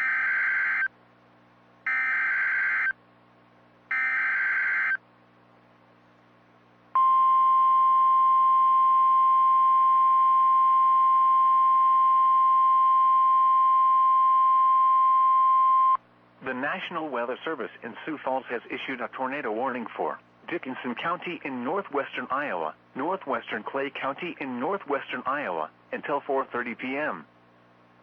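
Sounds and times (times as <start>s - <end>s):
steady warning alarm tone: 0.0s - 0.9s, 1.9s - 3.0s, 3.9s - 5.0s.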